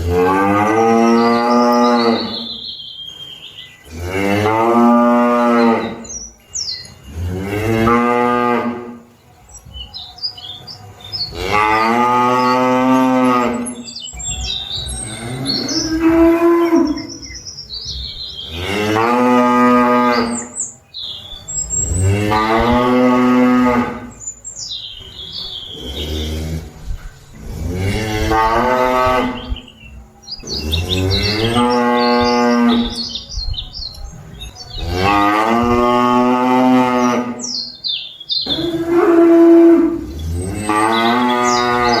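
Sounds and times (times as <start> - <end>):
cattle mooing: 0.0 - 2.6, 3.8 - 6.2, 7.1 - 9.1, 11.2 - 20.6, 21.5 - 24.2, 25.7 - 29.6, 30.4 - 33.2, 33.9 - 37.6, 38.4 - 42.0
small birds chirping faintly: 0.0 - 42.0.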